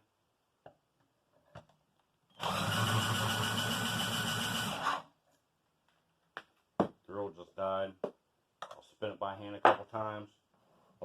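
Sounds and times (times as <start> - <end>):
cordless drill running: 2.4 - 5.1.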